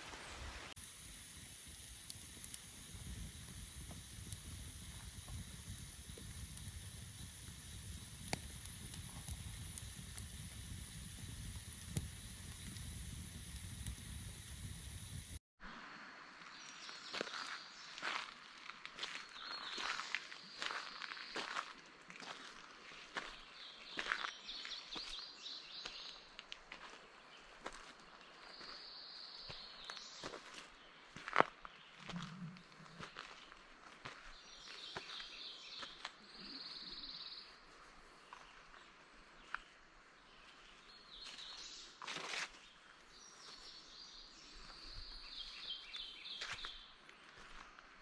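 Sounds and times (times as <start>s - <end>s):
faint steady high hiss: 0.0s - 16.9s
sharp clicks: 0.8s - 15.4s
sharp ticks and crunches: 0.8s - 15.4s.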